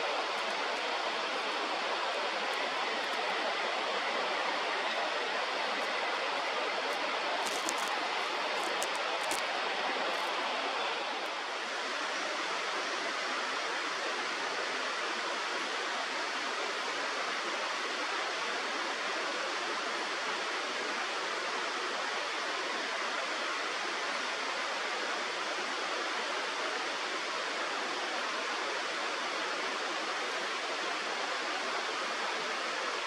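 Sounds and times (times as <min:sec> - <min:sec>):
river water rushing: 0:00.0 - 0:11.8.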